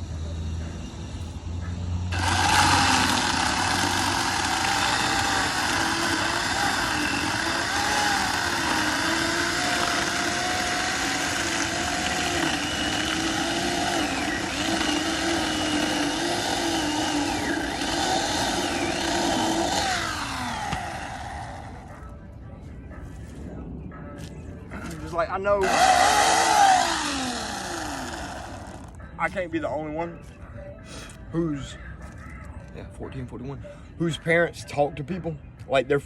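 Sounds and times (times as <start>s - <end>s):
electric chainsaw motor running: 2.1s - 21.9s, 25.6s - 29.0s.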